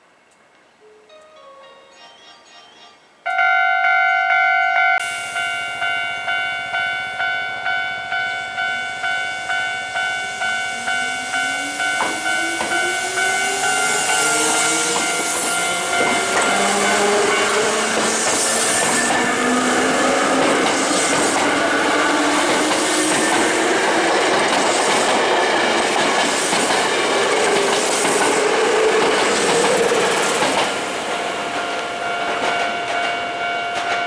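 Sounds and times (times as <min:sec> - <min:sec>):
level crossing electronic bell: 0:01.1 - 0:14.2
train wheels on rails: 0:05.0 - 0:34.0.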